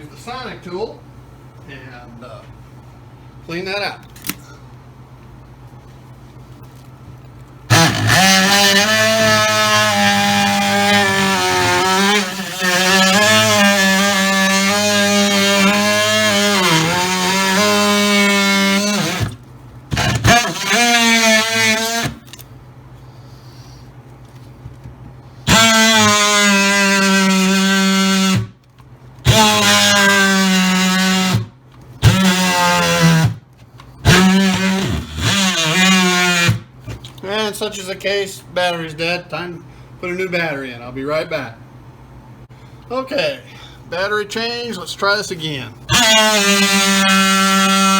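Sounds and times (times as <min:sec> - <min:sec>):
oscillating multi-tool cutting wood: 0:07.7 - 0:22.4, 0:25.5 - 0:28.5, 0:29.2 - 0:33.4, 0:34.0 - 0:36.6, 0:45.9 - 0:47.9.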